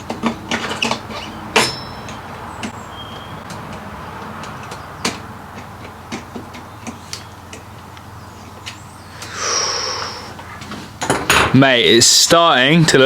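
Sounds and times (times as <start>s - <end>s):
tools and bike parts clicking: 0.0s - 8.8s, 11.0s - 11.6s.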